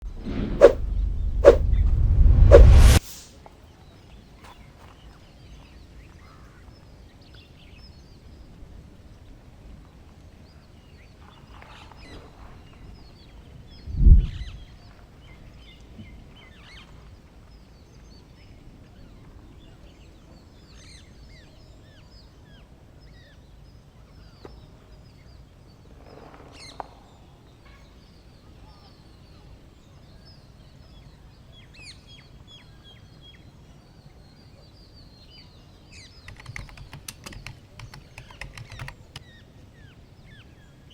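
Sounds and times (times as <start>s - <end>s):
low thud: 0.1s - 3.0s.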